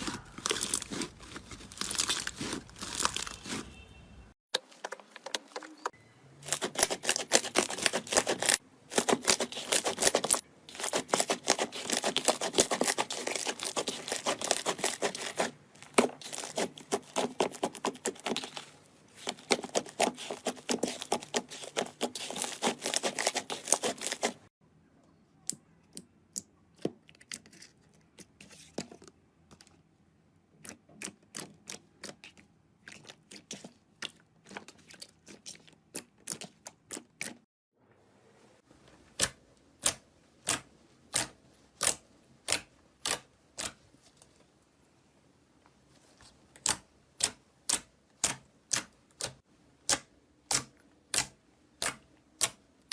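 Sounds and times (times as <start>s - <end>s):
slime crackling and popping: 0.0s - 3.6s, 6.5s - 24.4s.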